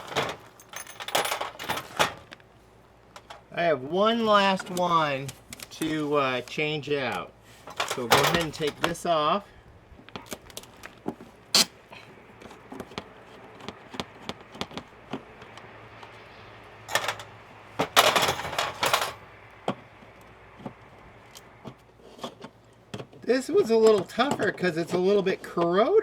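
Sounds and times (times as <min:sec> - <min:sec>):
tools scraping metal: 0:11.6 - 0:11.8.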